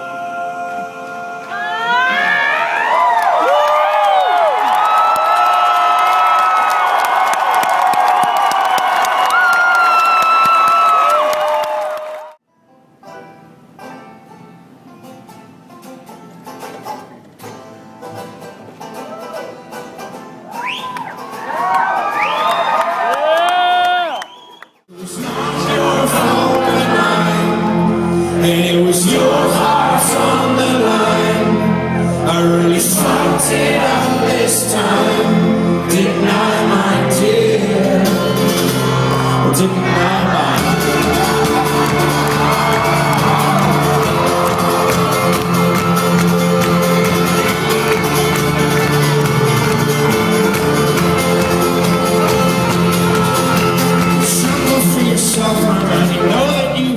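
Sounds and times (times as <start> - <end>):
folk-rock band playing live: 13.0 - 22.8, 25.0 - 56.9.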